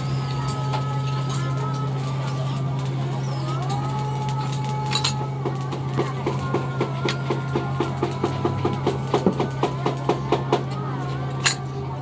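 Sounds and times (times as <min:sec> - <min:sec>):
ringing tones shifting in pitch: 0:00.0 - 0:05.4
fast beat of sharp strikes: 0:00.0 - 0:10.8
steady low hum: 0:00.0 - 0:12.0.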